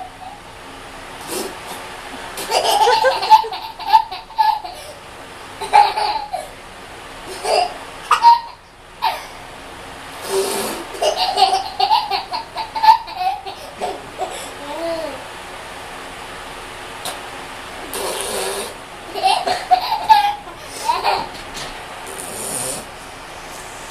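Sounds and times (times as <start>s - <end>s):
baby belly-laughing: 2.4s - 5.0s, 5.6s - 6.5s, 10.4s - 15.2s, 19.1s - 21.4s.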